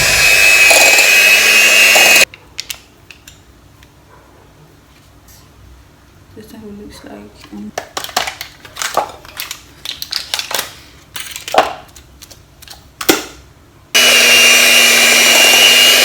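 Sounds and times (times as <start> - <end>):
electric hand mixer running: 0.0 - 2.2, 14.0 - 16.0.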